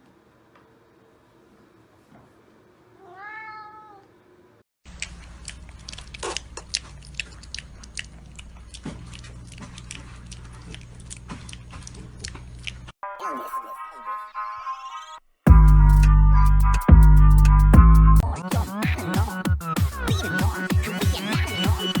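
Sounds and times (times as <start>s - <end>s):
cat meowing: 3.0s - 4.1s.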